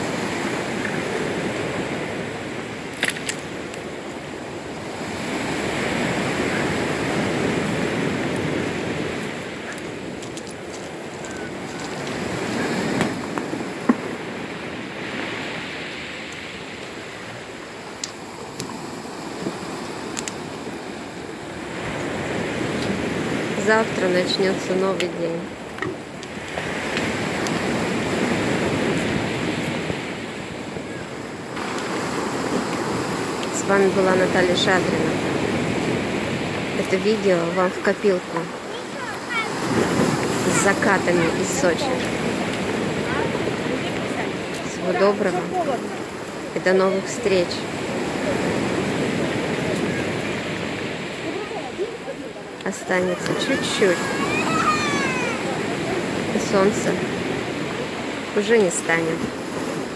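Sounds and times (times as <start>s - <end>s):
sea waves washing onto shore: 0.0s - 59.9s.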